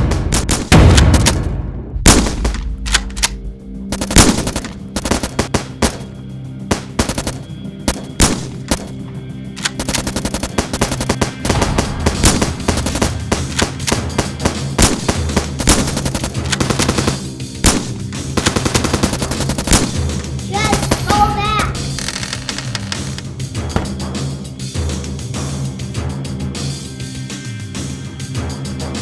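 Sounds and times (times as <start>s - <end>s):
rapid machine gun fire: 0.0s - 9.0s, 9.6s - 22.2s.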